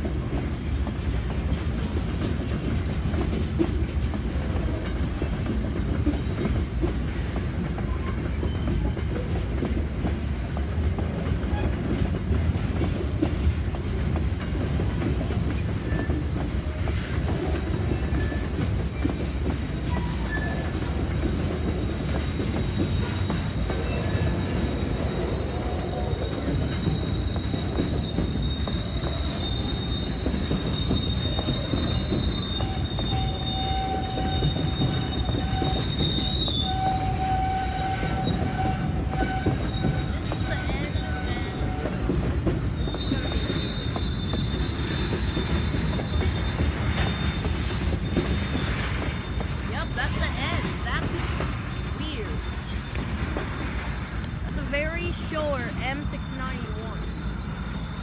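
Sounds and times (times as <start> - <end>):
freight train rumbling on track: 0.0 - 58.0
high wheel squeal: 17.9 - 58.0.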